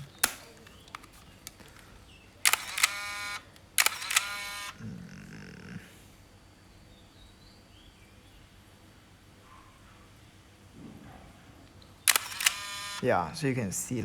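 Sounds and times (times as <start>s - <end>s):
camera shutter and mirror clack: 0.0s - 1.8s, 2.5s - 4.8s, 12.1s - 13.0s
camera film winder whir: 2.4s - 4.8s, 12.1s - 13.0s.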